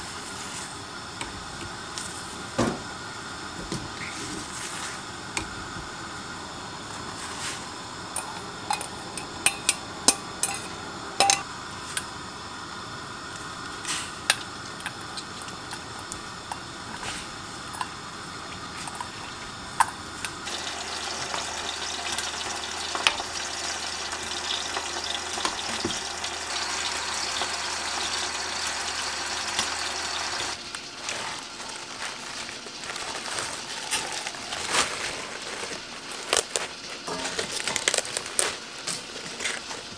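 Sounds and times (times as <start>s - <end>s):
cooking hiss: 0.0s - 39.9s
utensil clinking against pot: 8.2s - 11.5s.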